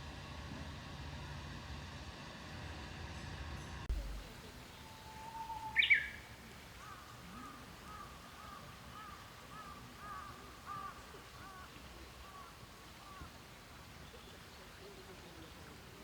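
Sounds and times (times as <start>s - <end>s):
bird chirping: 3.9s - 15.7s.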